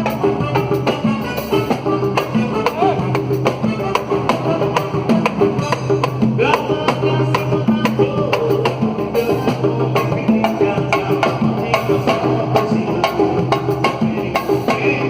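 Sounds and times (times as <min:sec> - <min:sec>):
repeating bass line: 0:00.0 - 0:15.0
samba percussion: 0:00.0 - 0:15.0.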